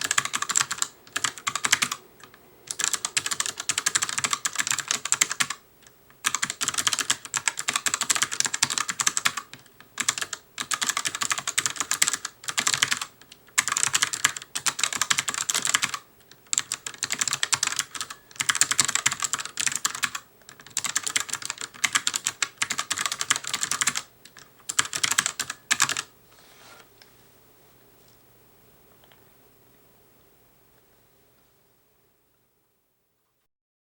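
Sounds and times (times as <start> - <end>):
mechanical keyboard typing: 0.0 - 5.6, 6.2 - 26.1.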